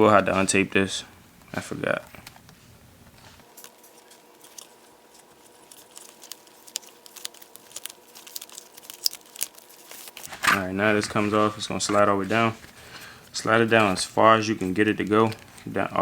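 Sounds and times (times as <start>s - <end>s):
electrical tape peeling: 2.2s - 14.0s.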